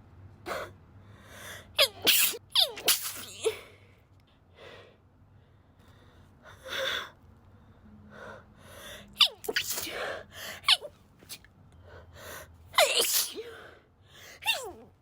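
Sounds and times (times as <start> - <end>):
woman's stifled sneezes: 1.8 - 3.7, 9.2 - 11.4, 12.8 - 13.5, 14.4 - 14.9
soft breaths: 3.6 - 9.2.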